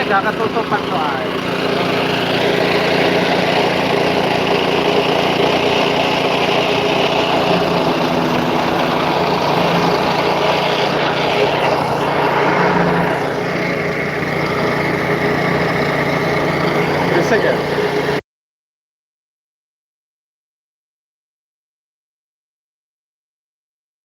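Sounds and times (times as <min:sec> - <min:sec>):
machinery engine running: 0:00.0 - 0:18.2.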